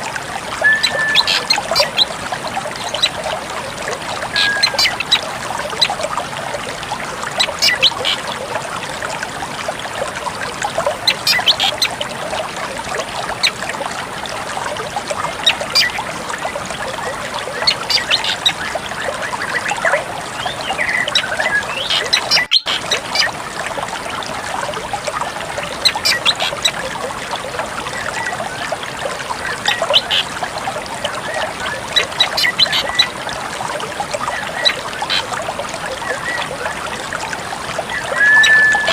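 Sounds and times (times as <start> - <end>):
running water trickling: 0.0 - 38.9
bird calling high notes: 0.6 - 2.1, 4.3 - 5.2, 37.9 - 38.9.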